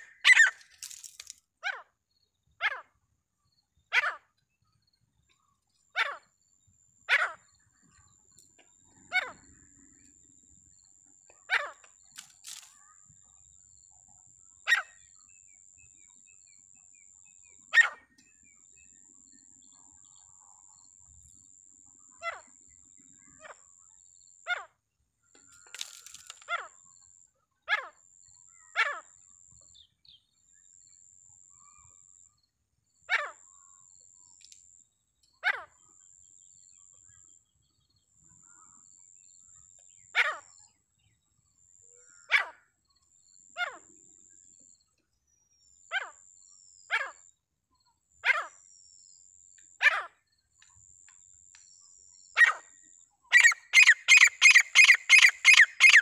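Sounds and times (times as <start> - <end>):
partridge calling: 0.0 - 0.8, 53.3 - 56.0.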